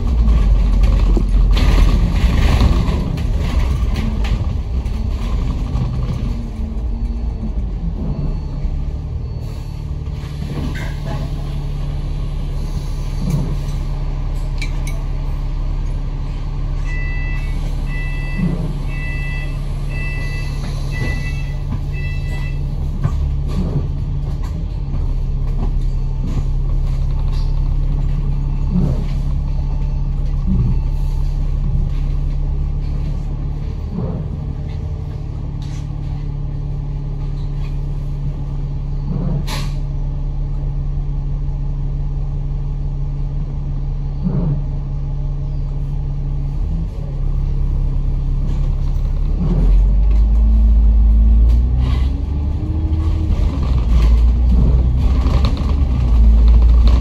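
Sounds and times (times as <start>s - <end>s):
knocks and rattles: 0.0s - 6.6s, 53.0s - 57.0s
bus engine running: 0.0s - 57.0s.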